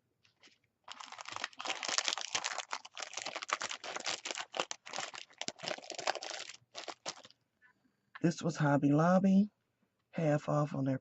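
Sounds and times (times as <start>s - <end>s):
packaging crinkling and rustling: 0.2s - 7.4s.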